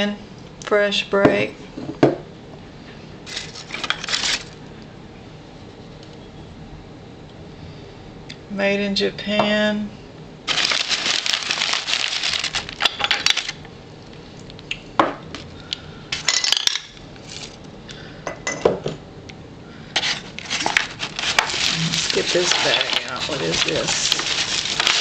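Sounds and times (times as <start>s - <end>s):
objects rummaged in a box: 3.3s - 4.6s, 10.5s - 13.6s, 17.2s - 17.6s, 20.0s - 25.0s
small hard objects clinking: 10.5s - 13.6s, 20.0s - 25.0s.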